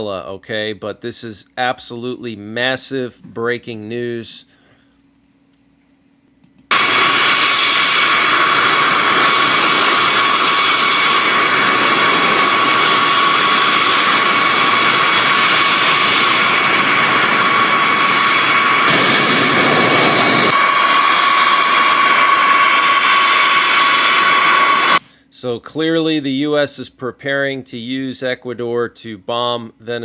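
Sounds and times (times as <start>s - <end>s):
high-pitched engine whine: 6.7s - 25.0s
jet engines roaring: 6.7s - 25.0s.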